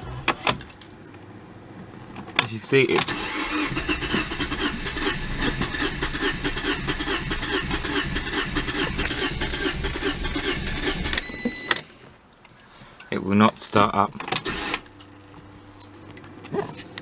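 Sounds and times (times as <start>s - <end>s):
starter motor cranking engine: 2.9s - 11.3s, 14.3s - 14.9s
high electronic beep: 11.2s - 11.8s.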